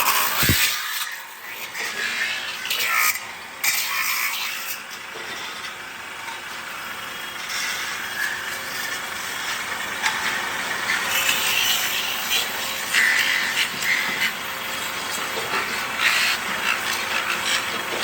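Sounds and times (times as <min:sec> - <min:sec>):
tools scraping metal pot: 0:00.0 - 0:02.2.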